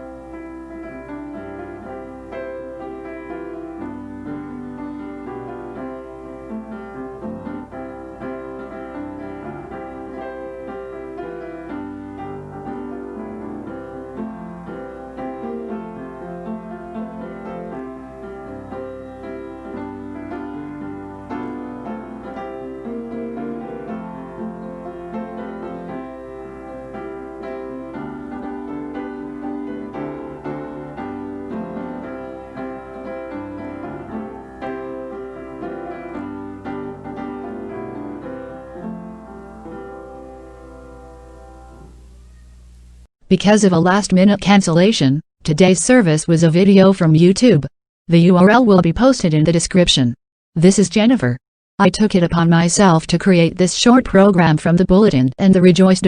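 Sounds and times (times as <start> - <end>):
instrumental piano music: 0.0 - 43.1.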